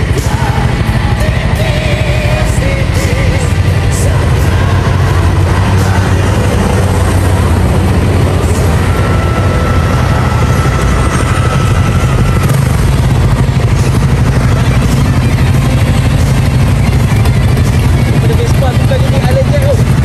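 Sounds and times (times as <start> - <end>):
road noise: 0.0 - 20.0
scooter engine: 0.0 - 20.0.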